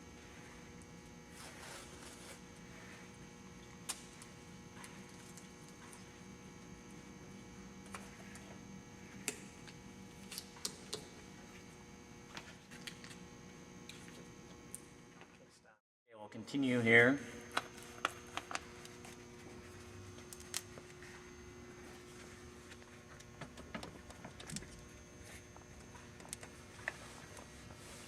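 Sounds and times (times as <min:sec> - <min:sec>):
faint electrical hum: 0:00.0 - 0:28.0.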